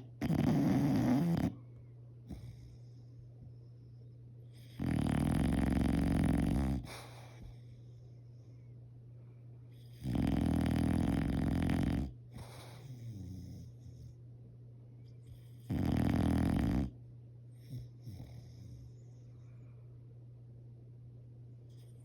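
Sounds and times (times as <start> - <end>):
dog snoring loudly: 0.0 - 1.6, 4.6 - 7.3, 9.8 - 13.7, 15.4 - 17.0
dog breathing softly: 2.2 - 10.0, 10.6 - 14.3.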